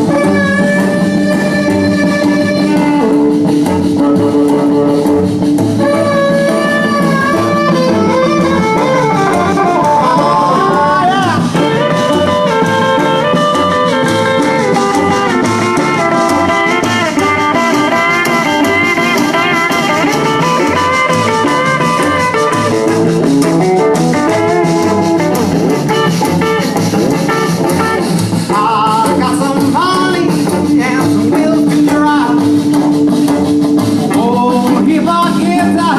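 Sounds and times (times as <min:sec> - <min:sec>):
band playing: 0:00.0 - 0:35.9
guitar: 0:00.0 - 0:35.9
person singing: 0:07.2 - 0:14.0, 0:28.5 - 0:32.6, 0:34.1 - 0:35.9.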